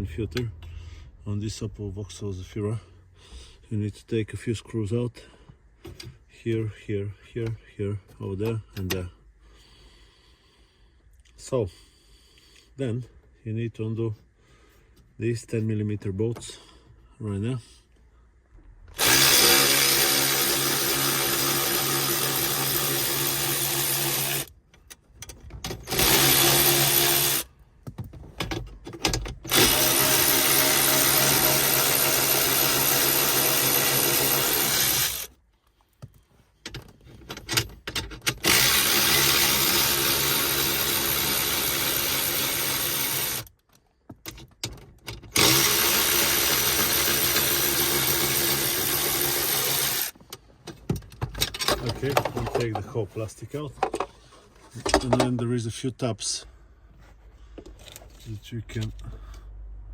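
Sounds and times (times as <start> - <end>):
power drill running: 19.0 - 24.5, 25.8 - 27.5, 29.5 - 35.3, 38.4 - 43.5, 45.4 - 50.2
clicks and rattles: 50.2 - 52.9.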